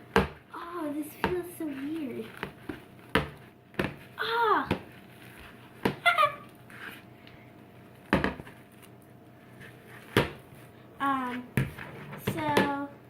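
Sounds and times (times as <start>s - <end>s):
girl squealing: 6.0s - 6.5s.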